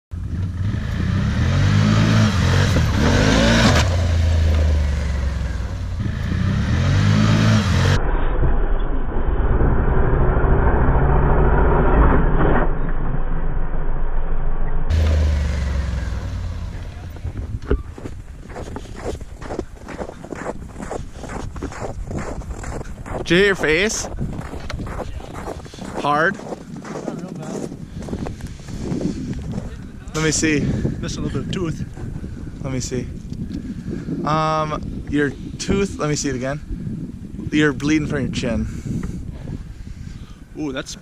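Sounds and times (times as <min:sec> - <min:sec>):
small engine revving: 0:00.2 - 0:08.0, 0:14.9 - 0:17.2.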